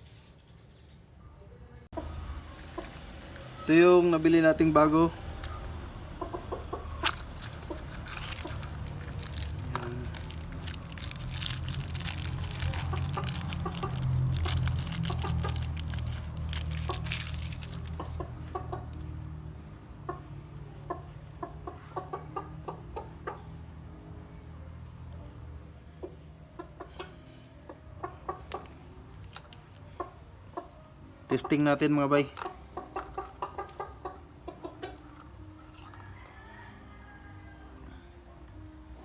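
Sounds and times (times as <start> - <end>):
chickens clucking: 2.0 - 23.6, 26.0 - 36.2
sharp clicks and rattles: 6.8 - 18.6.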